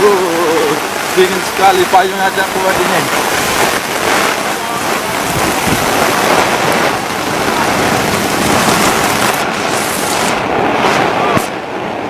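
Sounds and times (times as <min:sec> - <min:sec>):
heavy rain: 0:00.0 - 0:12.0
strong gusting wind: 0:00.0 - 0:12.0.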